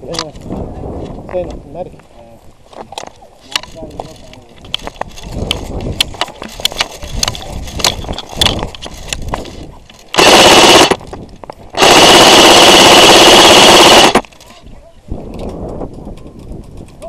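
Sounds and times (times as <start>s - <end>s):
airsoft gun full auto bursts: 10.1s - 11.0s, 11.8s - 14.3s.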